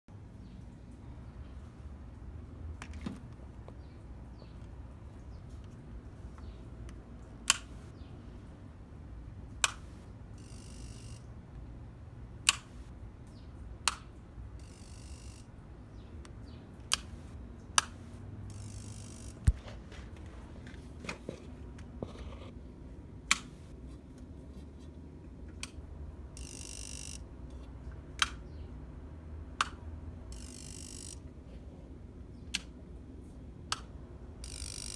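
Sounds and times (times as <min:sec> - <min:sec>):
sharp single clicks: 0:07.5 - 0:07.8.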